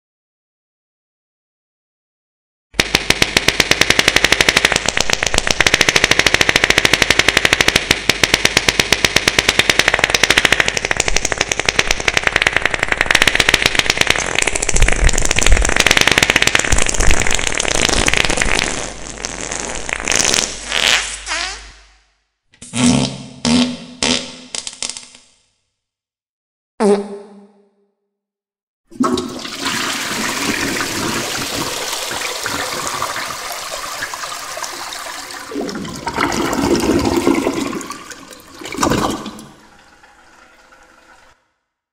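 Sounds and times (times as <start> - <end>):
harsh rapid rattling: 2.8 - 18.3.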